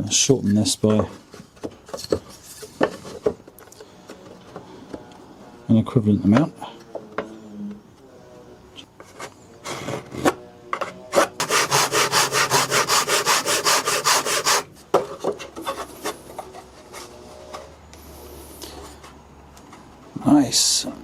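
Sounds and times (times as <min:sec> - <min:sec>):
wood being handled: 0:00.4 - 0:05.1, 0:08.8 - 0:18.1
hand saw cutting wood: 0:11.1 - 0:14.7.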